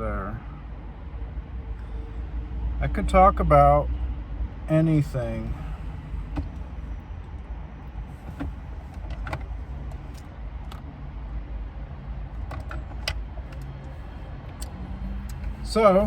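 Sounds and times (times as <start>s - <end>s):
car interior low rumble: 0.0s - 16.0s.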